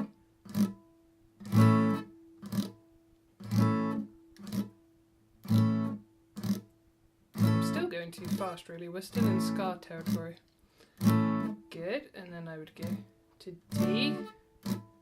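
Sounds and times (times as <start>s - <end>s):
acoustic guitar reggae strum: 0.0s - 2.8s, 3.4s - 4.8s, 5.4s - 6.7s, 7.4s - 10.3s, 10.9s - 11.6s, 13.7s - 15.0s.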